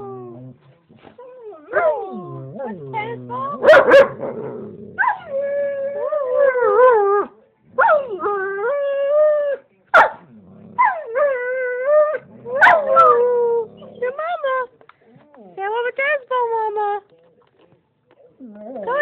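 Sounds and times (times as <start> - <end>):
dog howling: 10.8 - 14.4.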